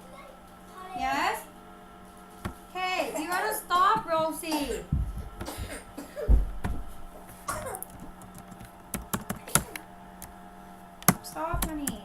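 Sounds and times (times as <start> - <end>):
dull thump: 3.7 - 8.1, 11.1 - 12.0
keyboard typing clicks: 7.8 - 10.3, 11.0 - 12.0.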